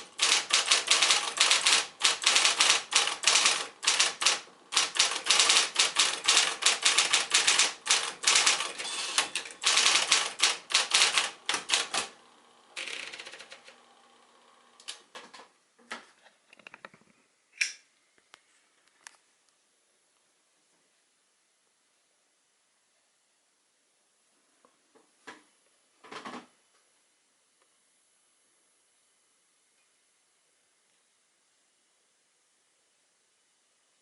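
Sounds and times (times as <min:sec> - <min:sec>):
electric typewriter typing: 0:00.0 - 0:12.2, 0:12.8 - 0:13.8.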